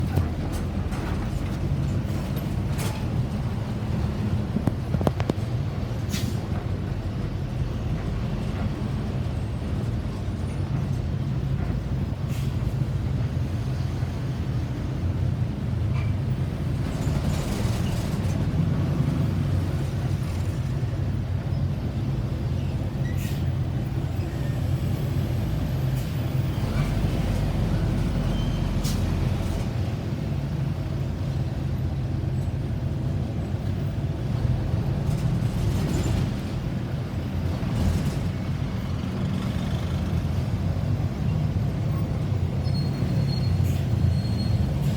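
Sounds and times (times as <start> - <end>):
vehicle engines rumbling: 0.0 - 44.9.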